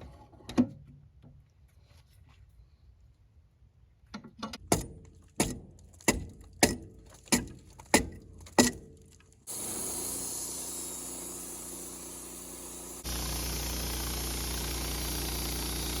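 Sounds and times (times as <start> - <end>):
engine running: 9.5 - 16.0.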